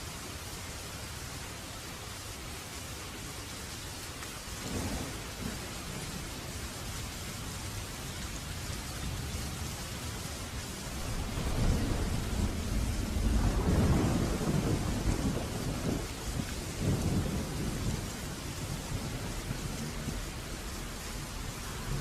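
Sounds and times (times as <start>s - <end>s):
rain hissing: 0.0s - 22.0s
thunder rumbling: 4.6s - 6.6s, 9.0s - 22.0s.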